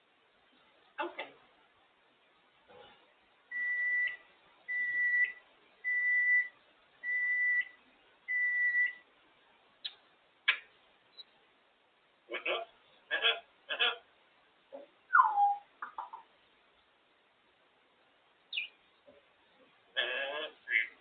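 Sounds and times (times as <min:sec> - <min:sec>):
parrot whistling notes: 0:15.1 - 0:15.7.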